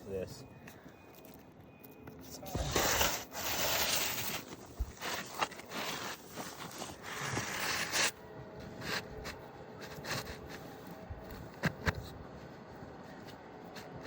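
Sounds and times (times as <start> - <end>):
roofing shingles scraping and rustling: 2.2 - 12.1.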